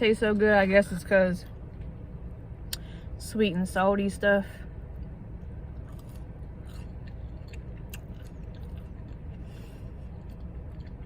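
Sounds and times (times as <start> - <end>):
steady low hum: 0.0 - 11.0
person chewing fries: 5.8 - 11.0.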